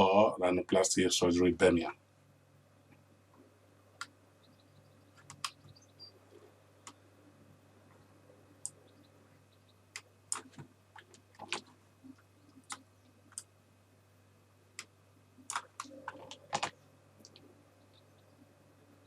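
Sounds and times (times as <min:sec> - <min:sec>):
low steady hum: 0:00.0 - 0:19.0
mouse and keyboard clicks: 0:05.2 - 0:05.7.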